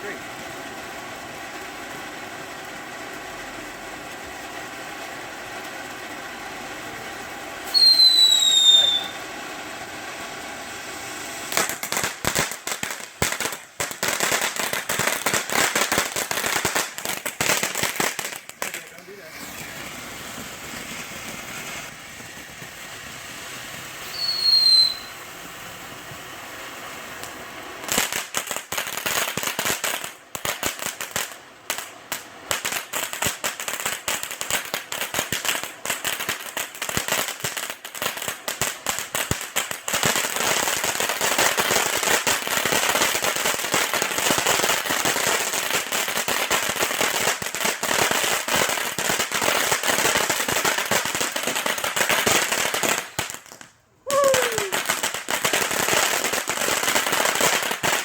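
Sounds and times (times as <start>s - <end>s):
fireworks popping and crackling: 0.0s - 58.0s
firework falling whistle: 7.6s - 12.1s, 18.1s - 27.4s, 54.0s - 55.1s.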